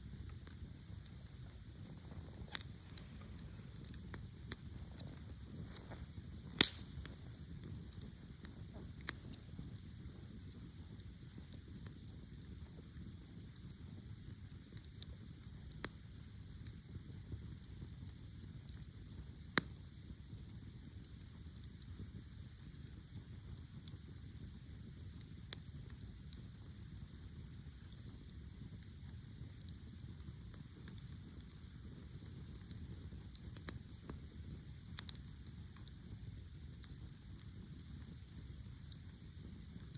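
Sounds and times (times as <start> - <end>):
crickets chirping: 0.0 - 39.9
rumble of burning wood: 0.0 - 39.9
campfire popping: 0.1 - 12.6, 27.8 - 36.1.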